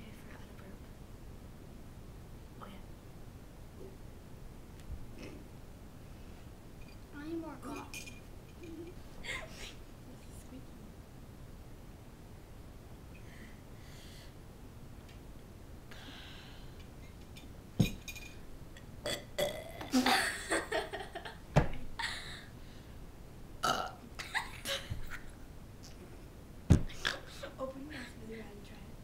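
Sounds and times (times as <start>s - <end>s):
person burping: 19.0s - 20.3s, 23.6s - 24.1s.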